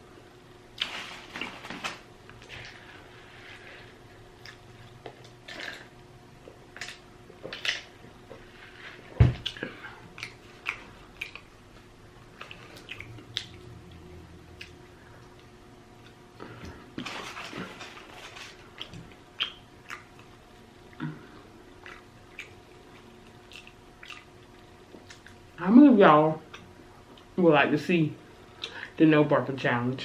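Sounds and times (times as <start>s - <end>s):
chewing and lip-smacking: 4.4s - 8.4s, 9.4s - 11.6s, 12.3s - 16.2s, 17.5s - 21.0s, 21.6s - 25.6s.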